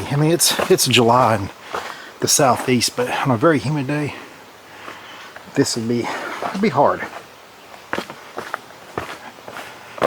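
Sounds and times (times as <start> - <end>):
footsteps on woodland trail: 0.0 - 10.0.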